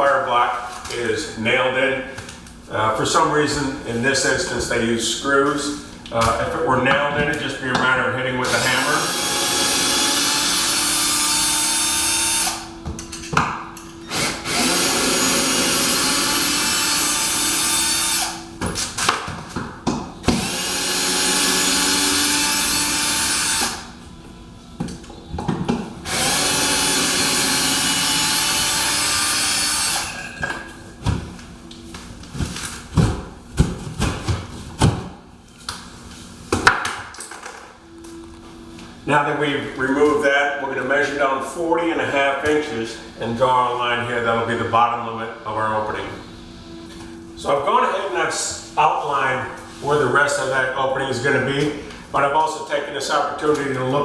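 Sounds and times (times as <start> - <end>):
cordless drill running: 8.4 - 12.8, 14.0 - 18.5, 20.2 - 24.0, 26.0 - 30.2.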